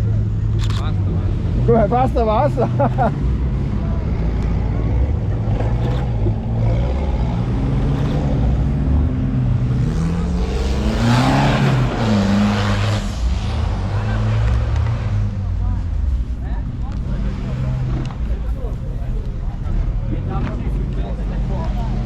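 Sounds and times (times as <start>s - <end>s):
off-road engine revving: 0.0s - 22.0s
rush of noise: 3.4s - 21.2s.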